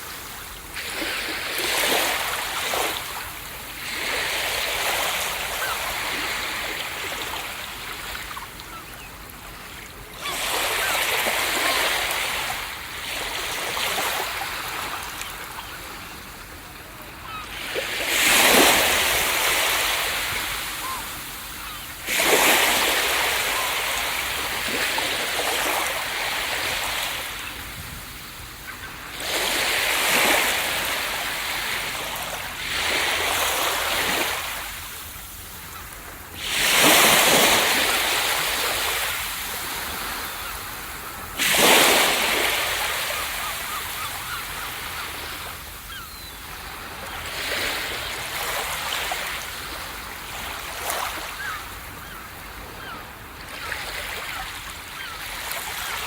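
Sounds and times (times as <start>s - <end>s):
ocean waves breaking: 0.0s - 9.0s, 10.0s - 56.0s.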